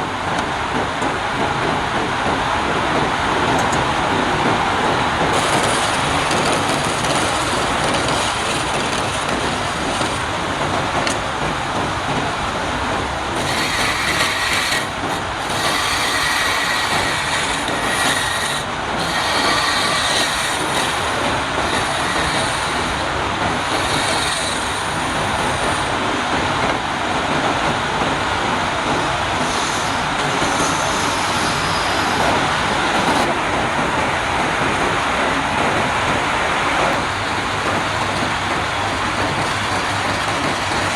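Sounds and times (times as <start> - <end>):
wood lathe cutting wood: 5.3 - 11.2, 13.2 - 26.0, 29.4 - 33.3, 36.9 - 40.9.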